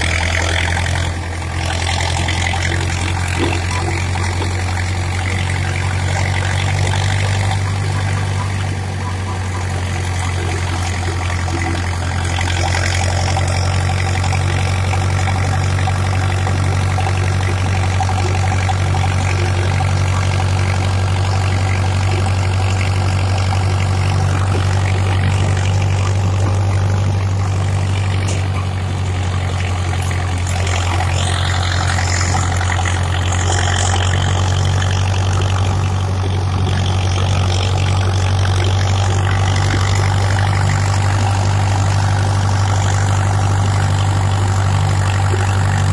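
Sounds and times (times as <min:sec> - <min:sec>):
tractor diesel engine humming: 0:00.0 - 0:45.9.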